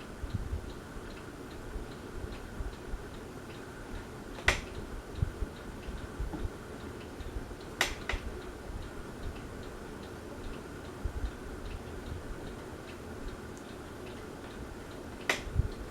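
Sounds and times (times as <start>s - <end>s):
ceiling fan ticking: 0.0s - 15.9s
sharp clicks: 4.4s - 4.8s, 7.8s - 8.3s, 15.2s - 15.5s.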